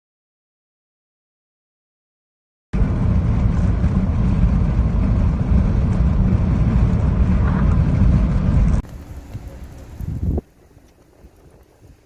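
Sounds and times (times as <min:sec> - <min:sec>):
wind buffeting microphone: 0:02.8 - 0:12.0.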